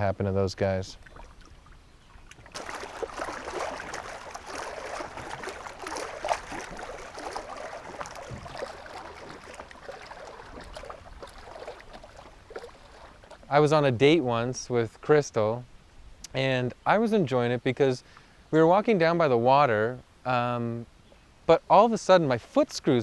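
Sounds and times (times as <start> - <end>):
water splashing and sloshing: 0.9 - 14.8.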